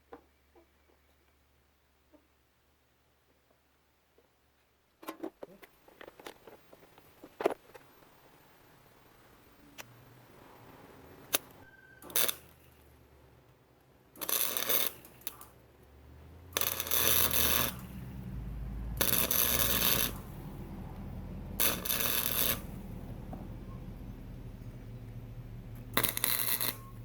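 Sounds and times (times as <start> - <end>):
arc welder crackling: 11.2 - 13.0, 14.1 - 27.0
low hum: 15.7 - 27.0.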